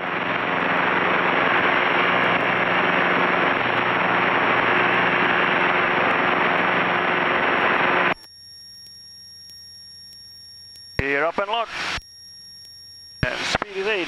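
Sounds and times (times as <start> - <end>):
low aircraft engine hum: 0.0 - 8.2.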